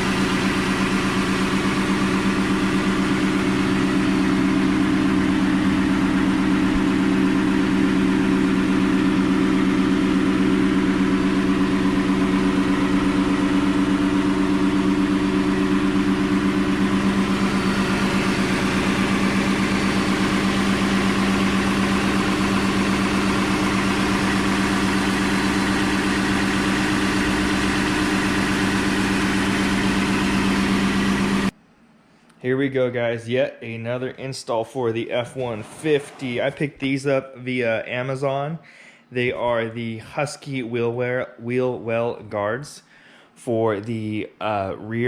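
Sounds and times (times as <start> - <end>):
truck engine idling: 0.0 - 31.5.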